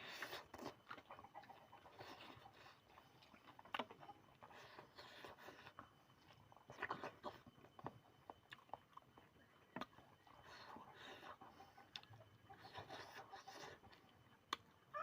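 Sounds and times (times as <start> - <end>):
person chewing and biting: 0.0 - 11.0.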